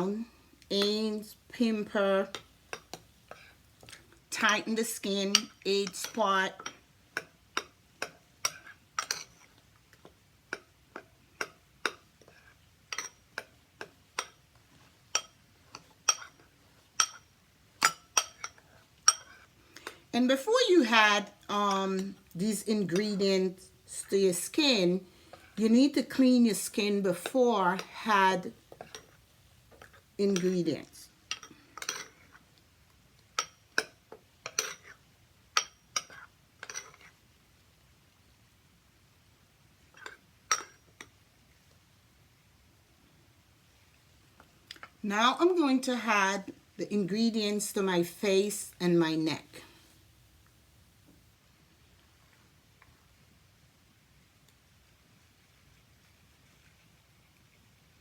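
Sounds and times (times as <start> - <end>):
utensil clinking against a dish: 4.8 - 9.6, 10.5 - 14.4, 15.1 - 20.0, 31.3 - 32.4, 33.4 - 37.1, 40.0 - 41.1
spoon clinking against bowl: 12.9 - 13.2, 17.0 - 19.4.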